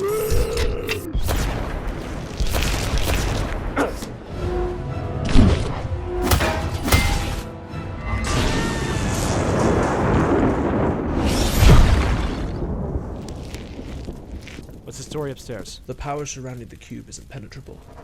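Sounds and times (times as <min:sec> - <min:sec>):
orchestral music: 0:04.3 - 0:09.4
battle impacts and crashes: 0:06.2 - 0:07.6.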